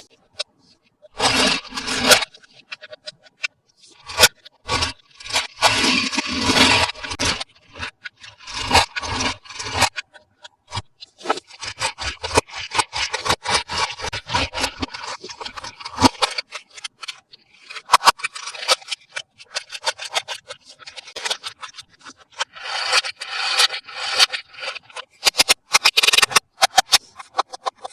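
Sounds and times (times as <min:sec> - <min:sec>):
packaging rubbing and scraping: 0:01.2 - 0:03.2, 0:03.9 - 0:10.1, 0:10.7 - 0:27.9.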